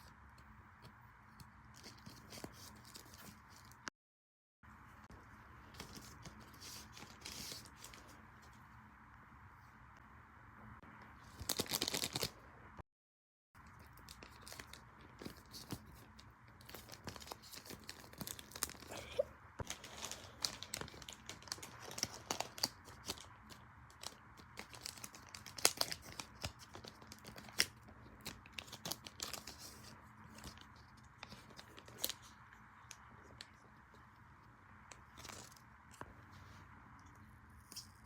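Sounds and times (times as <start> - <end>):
crinkling and crackling: 13.6 - 36.4.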